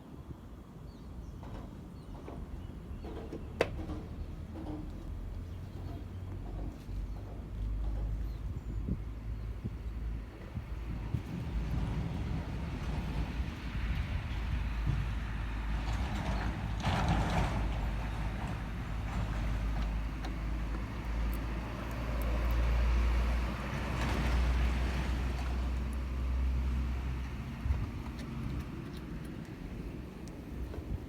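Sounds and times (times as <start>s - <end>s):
diesel engine idling: 10.8s - 31.0s.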